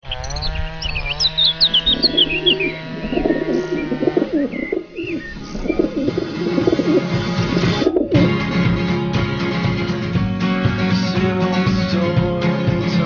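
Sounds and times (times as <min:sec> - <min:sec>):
birds chirping: 0:00.0 - 0:08.4.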